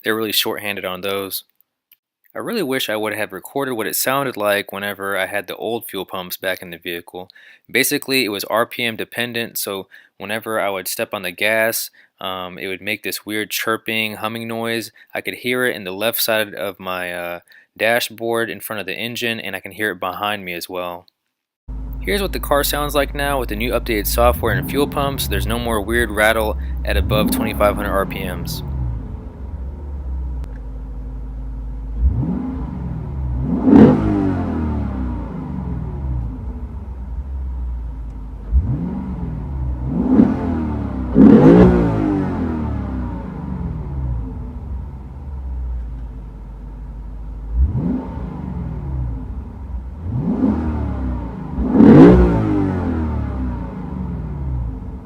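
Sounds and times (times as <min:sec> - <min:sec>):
car engine idling and revving: 0:21.7 - 0:55.0.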